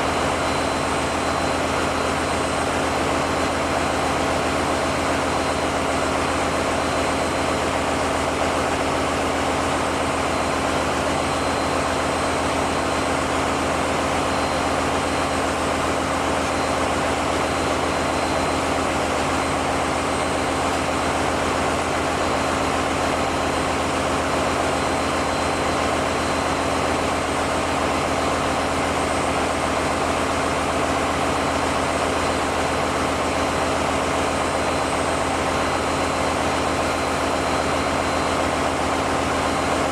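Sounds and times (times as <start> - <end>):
diesel generator engines running: 0.0 - 39.9.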